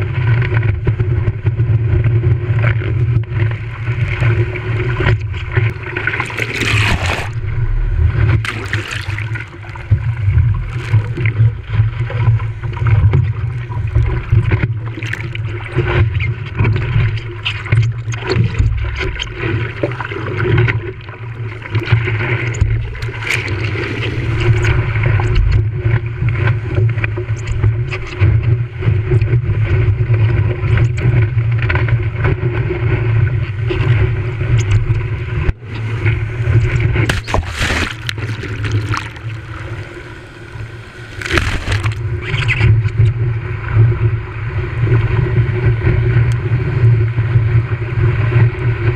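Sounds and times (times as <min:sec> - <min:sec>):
water splashing and gurgling: 0:00.0 - 0:48.9.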